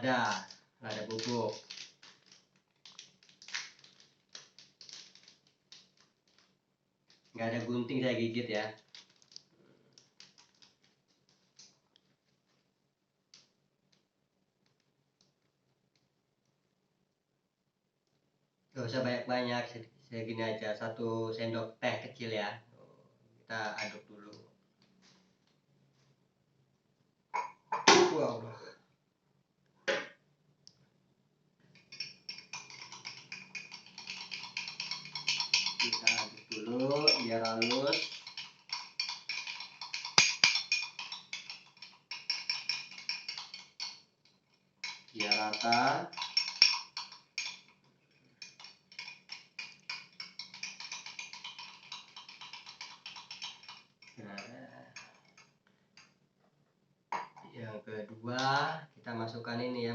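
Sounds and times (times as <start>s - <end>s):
teaspoon clinking against glass: 31.8s - 44.0s, 44.8s - 47.8s, 48.4s - 56.1s.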